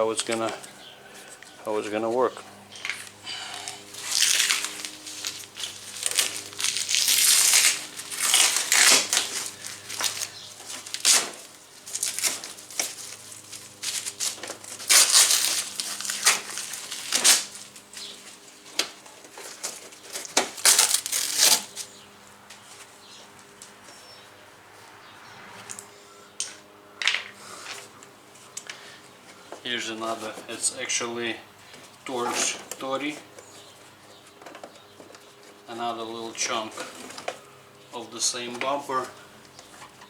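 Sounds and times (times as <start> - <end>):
faint steady hum: 0.0 - 40.0
plastic bumper scraping and crackling: 3.7 - 22.0, 32.0 - 37.5.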